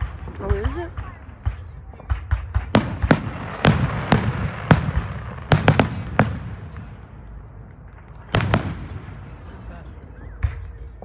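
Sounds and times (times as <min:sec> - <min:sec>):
fireworks bursting: 0:00.0 - 0:11.0.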